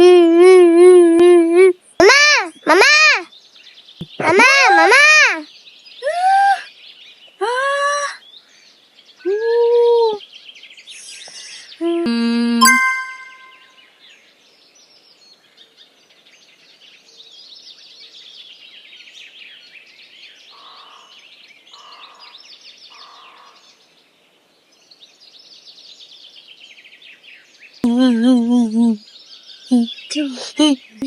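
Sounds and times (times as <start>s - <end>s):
birds chirping: 2.0s - 7.4s, 12.6s - 13.7s.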